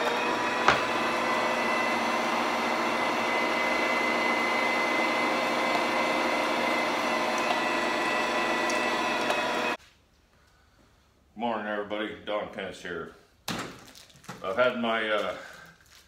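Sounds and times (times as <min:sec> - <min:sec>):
electric meat grinder whining: 0:00.0 - 0:09.8.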